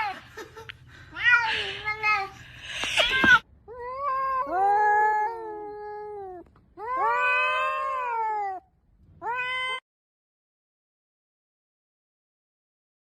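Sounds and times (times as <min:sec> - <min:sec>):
cat yowling: 0:02.9 - 0:08.6, 0:09.2 - 0:09.8.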